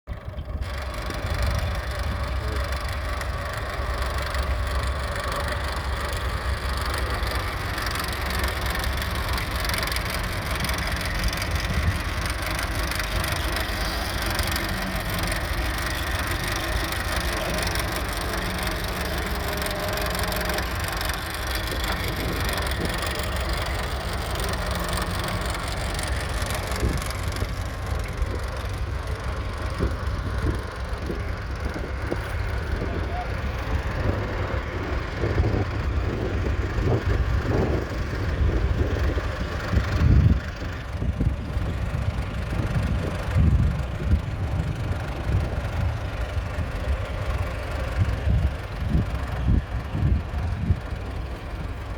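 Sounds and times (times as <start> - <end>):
tractor diesel engine running: 0.0 - 51.9
continuous crackling: 0.5 - 35.8.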